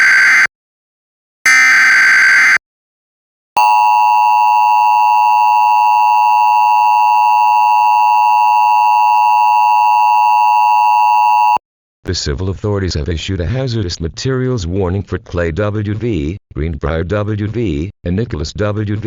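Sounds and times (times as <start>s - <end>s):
two-tone alarm tone: 0.0s - 0.5s, 1.5s - 2.6s, 3.6s - 11.6s.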